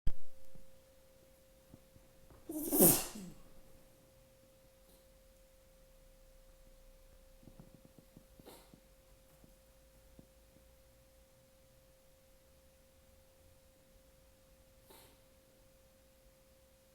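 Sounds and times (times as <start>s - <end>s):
person sneezing: 2.5s - 3.6s.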